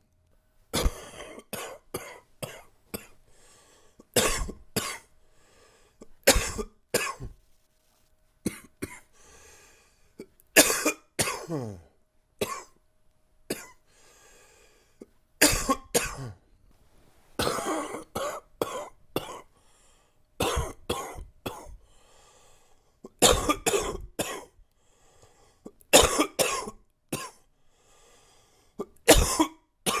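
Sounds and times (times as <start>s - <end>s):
man coughing: 0.8s - 3.2s, 4.0s - 5.1s, 6.2s - 7.3s, 10.6s - 12.8s, 15.4s - 16.4s, 17.4s - 19.5s, 20.4s - 21.8s, 23.1s - 24.6s, 25.9s - 27.4s, 28.8s - 30.0s
faint breaths: 3.2s - 4.2s, 5.1s - 6.2s, 9.0s - 10.3s, 13.8s - 15.2s, 19.5s - 20.3s, 21.7s - 23.1s, 24.6s - 25.8s, 27.4s - 28.9s.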